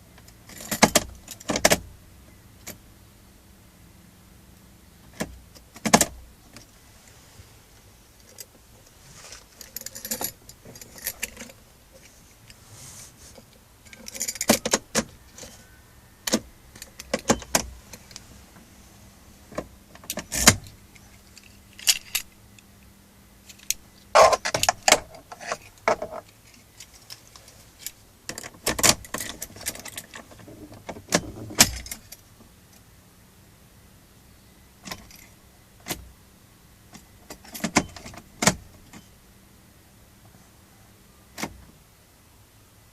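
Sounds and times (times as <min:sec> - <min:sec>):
faint steady hum: 0:00.0 - 0:42.9
jangling rattle: 0:09.5 - 0:12.1, 0:13.8 - 0:14.8
metallic clicks and clinks: 0:09.5 - 0:12.1, 0:13.8 - 0:15.6, 0:20.0 - 0:22.6.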